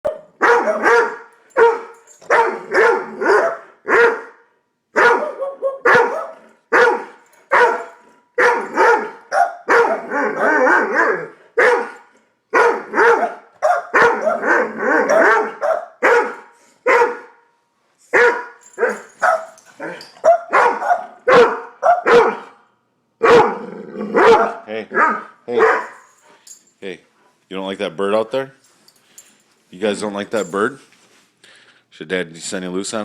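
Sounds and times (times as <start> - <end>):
dogs barking: 0.1 - 4.4, 5.0 - 17.4, 18.1 - 22.5, 23.2 - 26.1.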